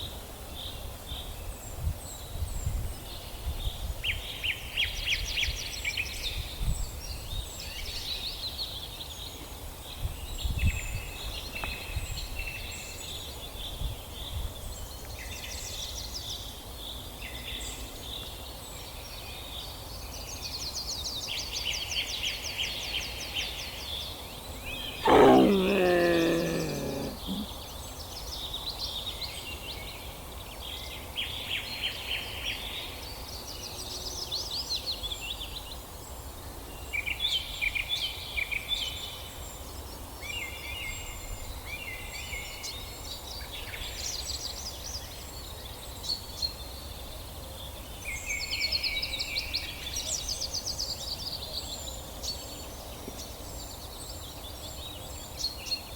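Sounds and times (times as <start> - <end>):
loud falling animal call: 25.0 - 27.4.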